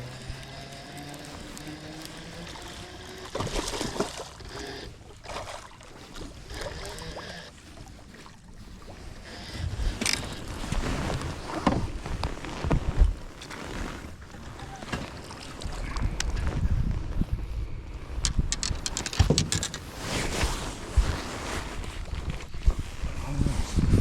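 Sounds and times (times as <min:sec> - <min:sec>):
knocks and rustles: 0:09.7 - 0:17.2, 0:18.1 - 0:22.9.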